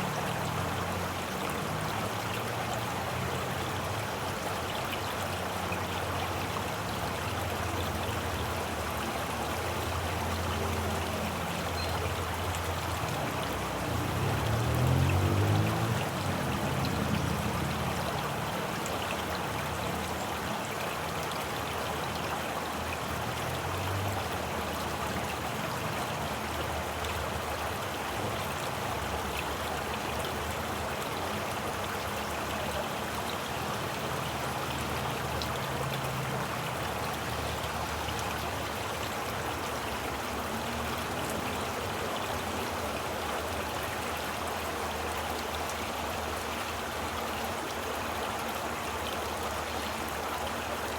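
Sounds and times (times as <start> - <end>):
running water rushing: 0.0 - 50.9.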